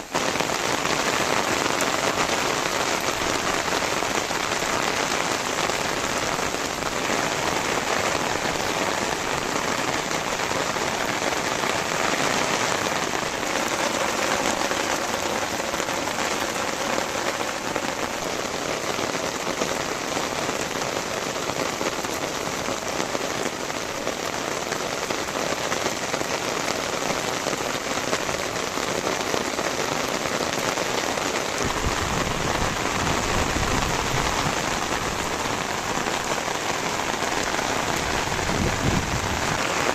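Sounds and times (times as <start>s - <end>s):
heavy rain on the ground: 0.0s - 39.9s.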